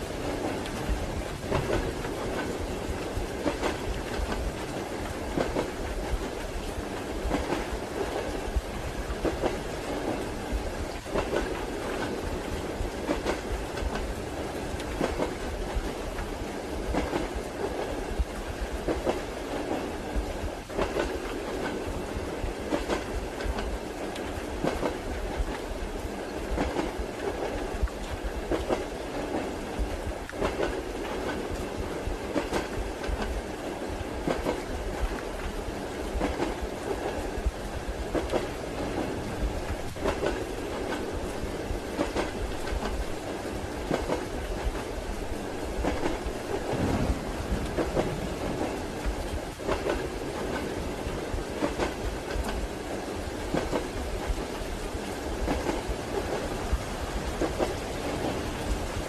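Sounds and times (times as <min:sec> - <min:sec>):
railway carriage rumble: 0:00.0 - 0:59.0.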